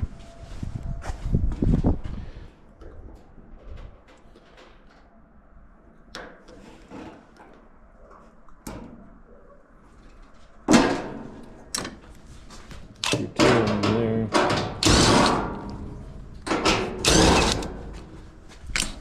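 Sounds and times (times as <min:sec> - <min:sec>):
sheet-metal panels clunking: 0:13.2 - 0:18.2.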